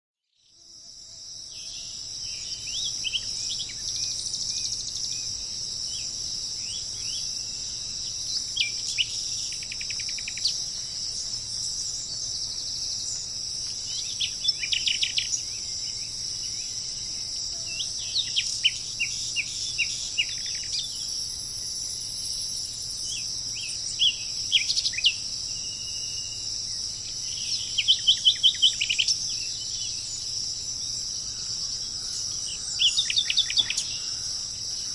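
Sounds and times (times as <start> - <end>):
insect chorus: 0.3 - 34.9
songbirds chirping and trilling: 0.4 - 34.9.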